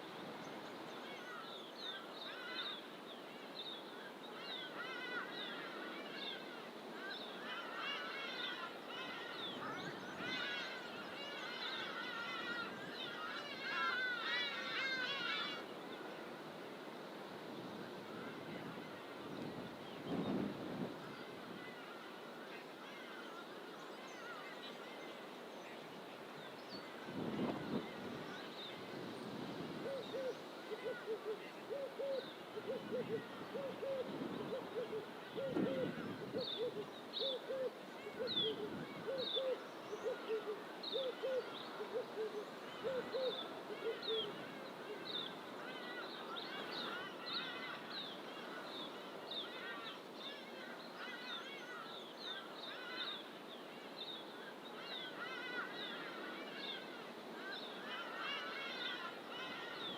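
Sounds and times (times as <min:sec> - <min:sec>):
birds twittering: 0:26.5 - 0:59.9
bird hooting calls: 0:29.8 - 0:45.4.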